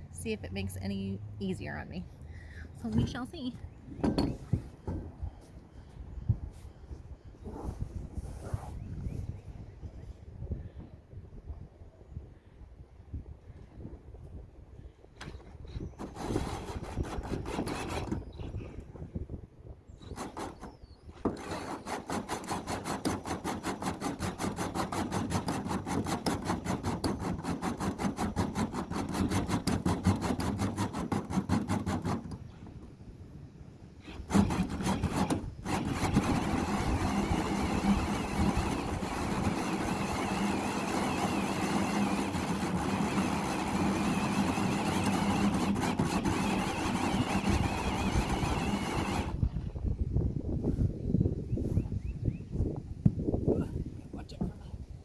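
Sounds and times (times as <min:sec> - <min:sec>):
cutting tool rasping: 0:15.8 - 0:18.6, 0:20.0 - 0:32.6, 0:34.0 - 0:49.5.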